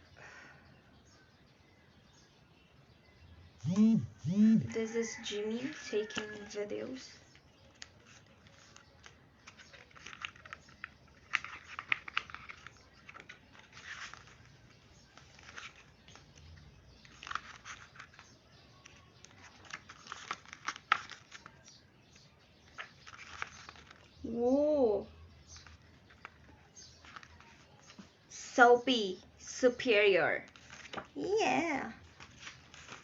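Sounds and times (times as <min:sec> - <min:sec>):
book pages turning: 0:05.7 - 0:06.5, 0:07.2 - 0:24.2, 0:25.4 - 0:28.3, 0:30.4 - 0:33.0.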